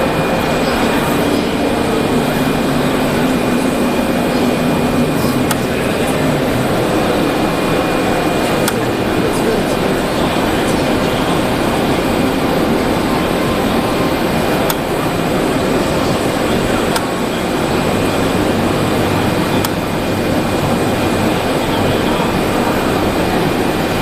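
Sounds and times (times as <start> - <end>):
machine whirring: 0.0 - 24.0.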